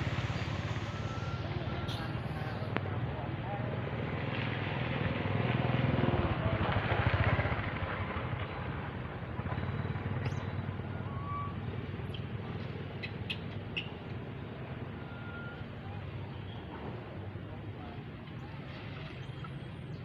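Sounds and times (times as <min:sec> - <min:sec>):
vehicle engine rumbling: 0:00.0 - 0:20.0.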